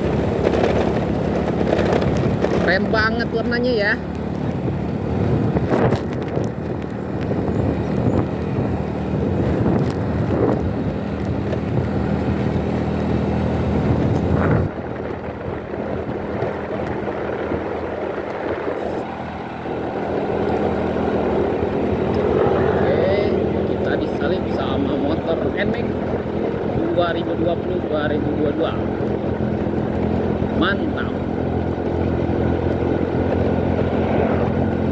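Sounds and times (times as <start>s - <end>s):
road and wind noise: 0.0s - 34.9s
vehicle engine running: 0.0s - 34.9s.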